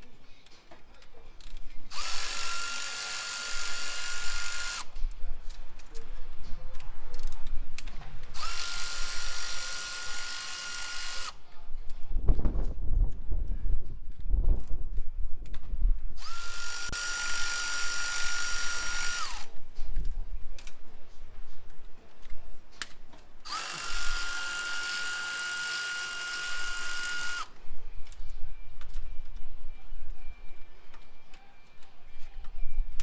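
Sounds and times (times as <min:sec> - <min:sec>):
power drill whining: 0:01.9 - 0:05.0, 0:08.4 - 0:11.4, 0:16.2 - 0:19.5, 0:23.4 - 0:27.5.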